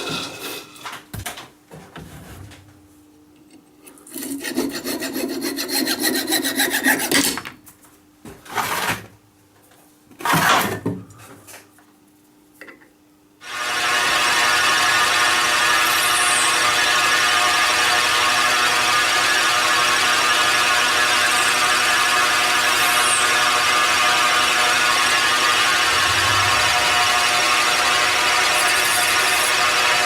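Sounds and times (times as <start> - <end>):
file rasping against metal: 4.1 - 7.4, 28.2 - 30.0.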